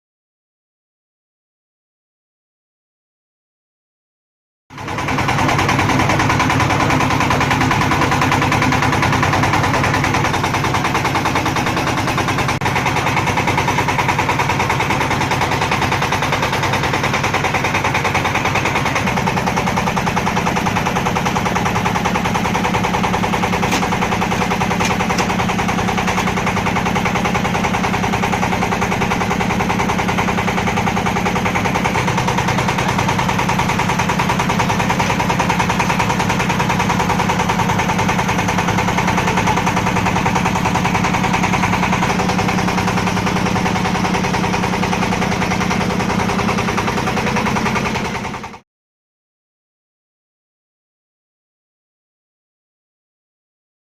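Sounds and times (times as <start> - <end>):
low machine hum: 4.8 - 48.0
machine rattling: 4.8 - 48.6.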